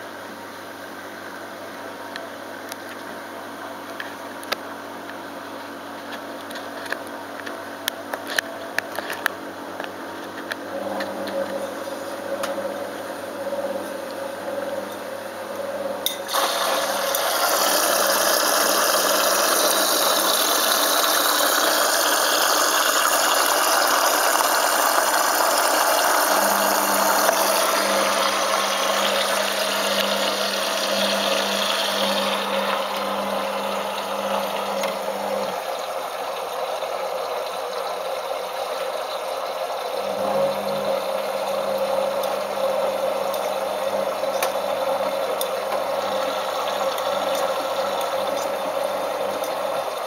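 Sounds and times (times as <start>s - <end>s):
water rushing into drum: 15.8s - 38.6s.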